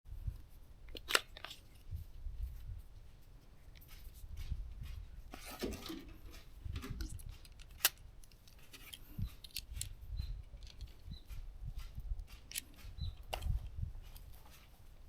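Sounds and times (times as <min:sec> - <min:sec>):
rustling: 0:00.1 - 0:15.0
small clicks of gun handling: 0:00.8 - 0:01.9, 0:05.7 - 0:11.2, 0:11.8 - 0:13.6.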